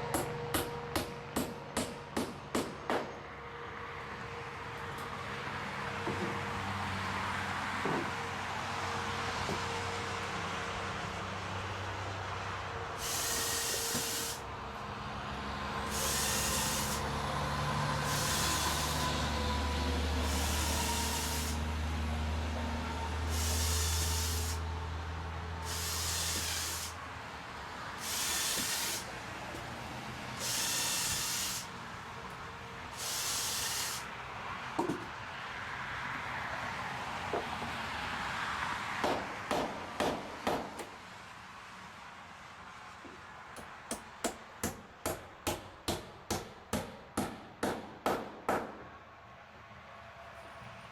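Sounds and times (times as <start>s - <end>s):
hissing air bursts: 13.0s - 14.5s, 15.8s - 17.2s, 18.0s - 19.2s, 20.2s - 21.7s, 23.2s - 24.7s, 25.6s - 27.0s, 27.9s - 29.2s, 30.3s - 31.7s, 32.9s - 34.2s
low engine-like hum: 13.8s - 33.1s.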